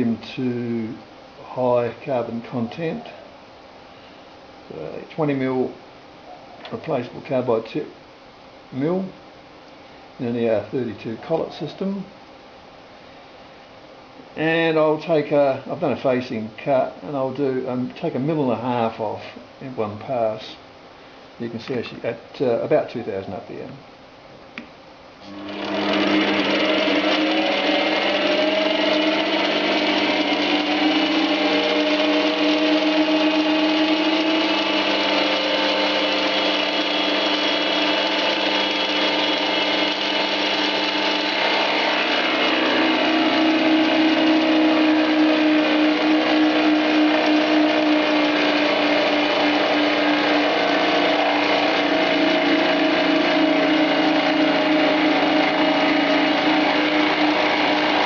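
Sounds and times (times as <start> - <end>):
metal lathe milling steel: 25.3 - 58.0.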